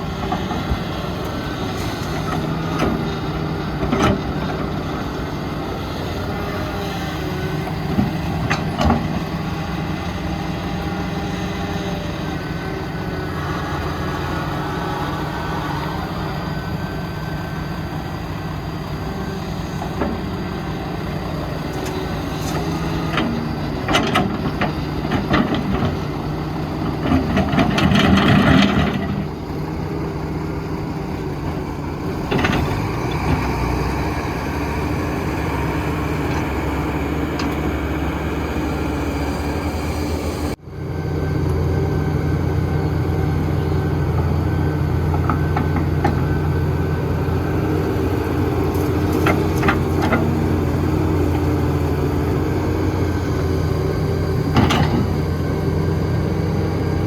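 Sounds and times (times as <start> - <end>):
heavy diesel machinery running: 0.0 - 57.0
loud rough rumble: 0.0 - 57.0.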